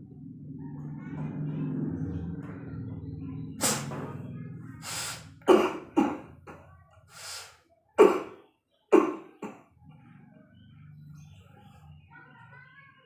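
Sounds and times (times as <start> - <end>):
noisy breaths: 3.5 - 7.7
man coughing: 5.4 - 6.4, 8.0 - 8.4, 9.0 - 9.6.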